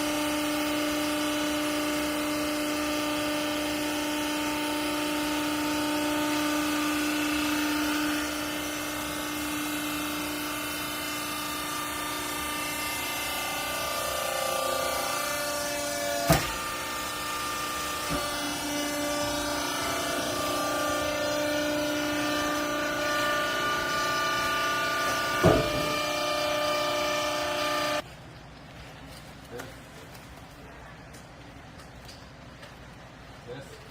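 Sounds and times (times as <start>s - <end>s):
hydraulic pump motor humming: 0.0s - 28.0s
sharp knocks: 25.3s - 26.0s.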